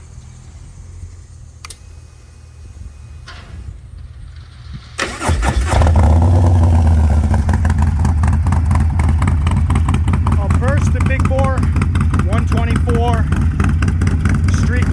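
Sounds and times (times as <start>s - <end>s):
motorcycle engine starting: 0.0s - 14.9s
motorcycle engine idling loudly: 5.7s - 14.9s.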